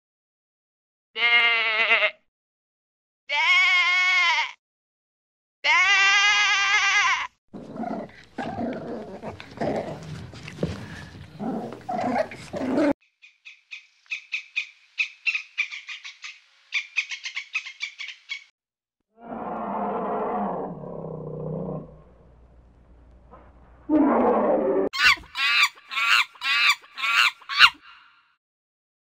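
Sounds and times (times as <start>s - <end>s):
sheep bleating: 1.2s - 2.2s, 3.3s - 4.6s, 5.6s - 7.3s
animal grunting and growling: 7.5s - 13.0s, 19.1s - 22.2s.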